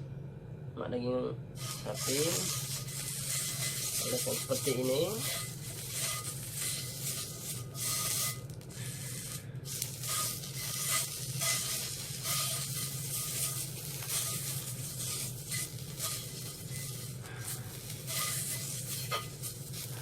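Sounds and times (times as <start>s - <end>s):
fat sizzling in a frying pan: 1.6s - 20.0s.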